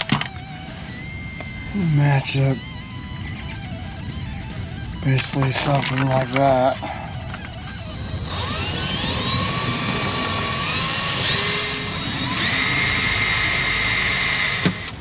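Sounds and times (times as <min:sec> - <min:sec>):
power drill motor whining: 0:05.5 - 0:15.0.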